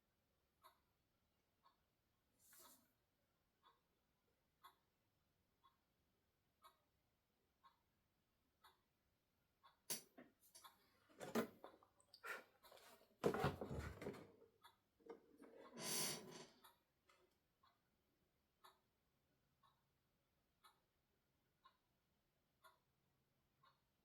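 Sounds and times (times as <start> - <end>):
wall clock ticking: 0.4 - 2.0, 3.4 - 12.0, 14.5 - 15.8, 16.5 - 24.0.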